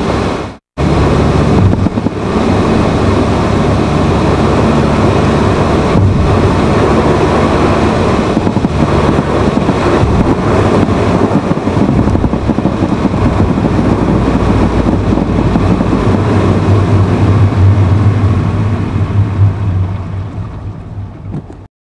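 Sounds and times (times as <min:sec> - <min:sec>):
car cabin running noise: 0:00.0 - 0:21.7
low hum: 0:00.0 - 0:21.7.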